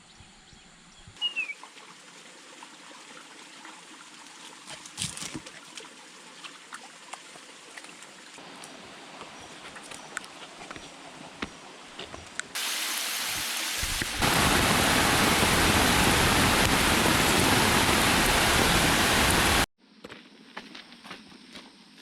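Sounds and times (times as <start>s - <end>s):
heavy rain: 12.6s - 19.7s.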